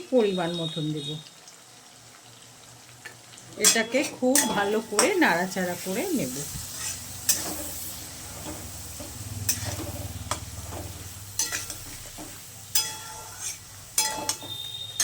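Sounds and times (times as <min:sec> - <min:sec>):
onions sizzling in oil: 0:00.0 - 0:15.0
spatula knocking and scraping pan: 0:08.4 - 0:14.6.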